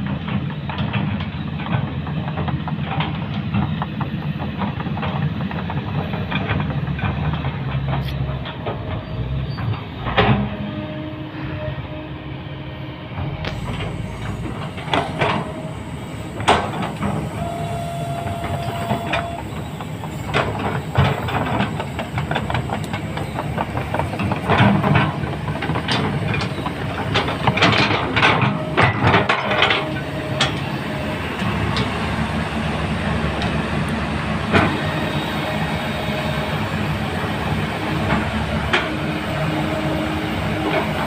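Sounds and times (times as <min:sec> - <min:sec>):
heavy diesel machinery running: 0:00.0 - 0:41.0
metal clanks and knocks: 0:18.4 - 0:30.7.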